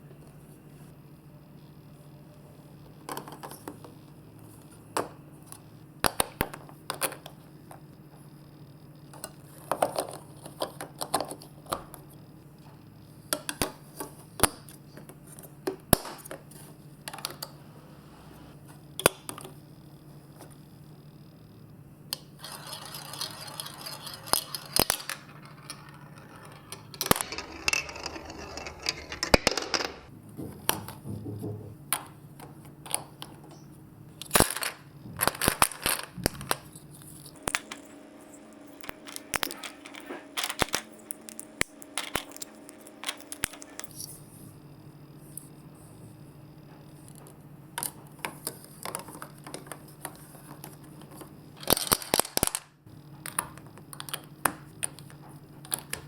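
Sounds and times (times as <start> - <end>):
faint steady hum: 0.0 - 56.0
marbles clicking in marble run: 22.4 - 30.1.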